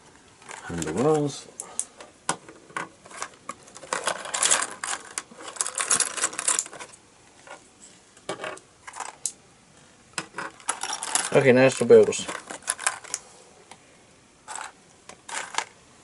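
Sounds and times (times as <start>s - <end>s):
plastic pieces clicking and clattering: 2.7s - 7.0s, 8.3s - 9.4s, 10.2s - 13.2s, 14.5s - 15.8s.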